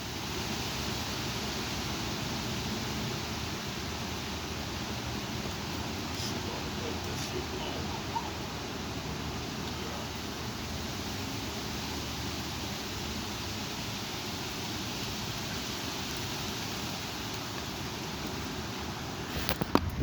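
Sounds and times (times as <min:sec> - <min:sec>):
strong wind blowing: 0:02.6 - 0:13.2.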